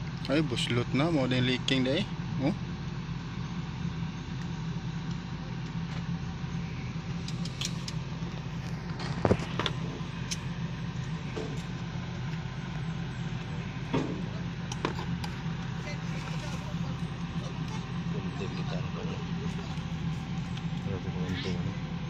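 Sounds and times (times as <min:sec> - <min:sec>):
low engine drone: 0:00.0 - 0:22.0.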